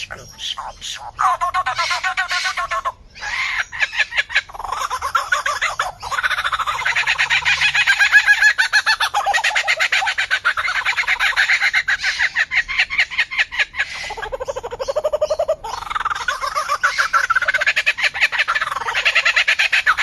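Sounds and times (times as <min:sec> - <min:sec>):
songbird singing: 0:00.0 - 0:20.0.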